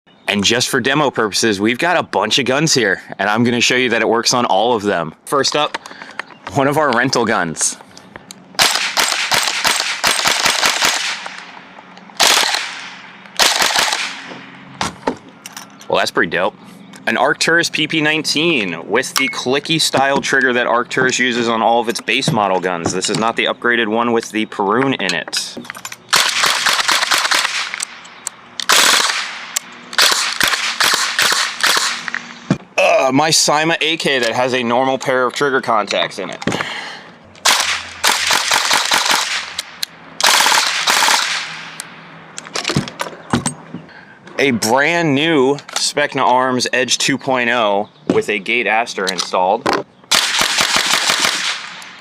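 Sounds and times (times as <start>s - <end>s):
airsoft rifle firing rapid shots: 8.6s - 11.5s, 12.2s - 14.3s, 26.1s - 27.8s, 28.7s - 32.1s, 37.4s - 39.6s, 40.2s - 41.5s, 50.1s - 51.8s.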